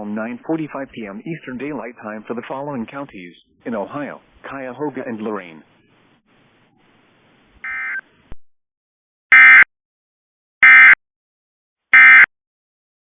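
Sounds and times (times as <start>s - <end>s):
buzzy digital data tones: 7.7s - 8.0s.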